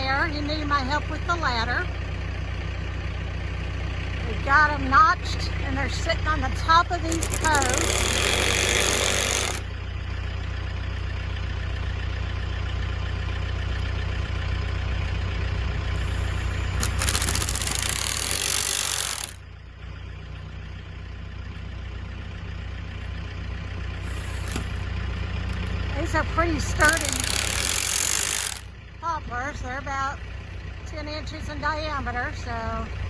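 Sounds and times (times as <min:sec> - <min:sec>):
tractor diesel engine idling: 0:00.0 - 0:33.0.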